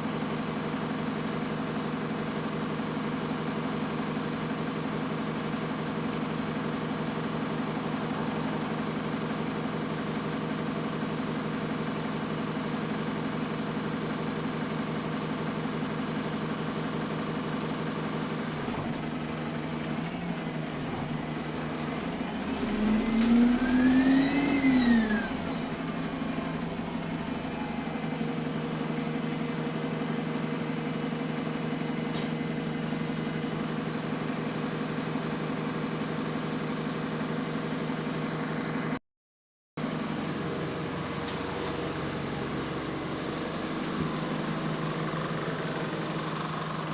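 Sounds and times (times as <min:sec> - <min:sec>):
bus engine running: 0:00.0 - 0:39.0, 0:39.8 - 0:46.9
rising and falling whine: 0:22.6 - 0:25.7.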